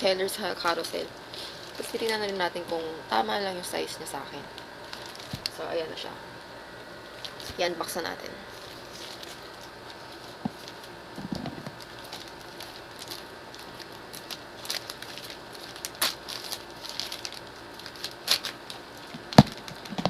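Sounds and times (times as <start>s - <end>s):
packaging crinkling: 1.3s - 2.4s, 4.5s - 5.6s, 7.0s - 7.6s, 8.5s - 20.0s.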